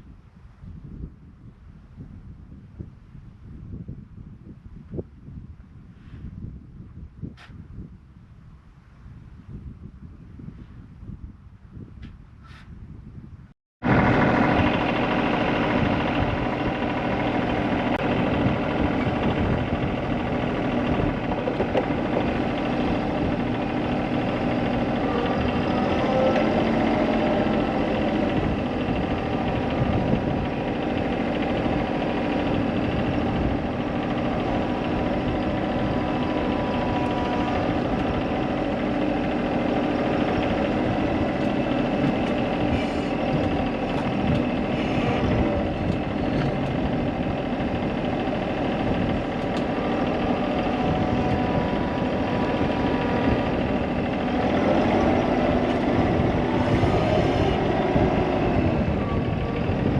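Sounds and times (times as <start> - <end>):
engine running steadily: 13.8 - 59.9.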